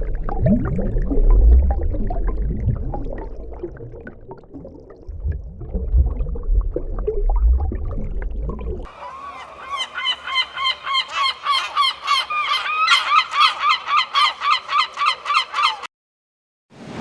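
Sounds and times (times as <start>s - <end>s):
bird calling: 8.9s - 15.9s.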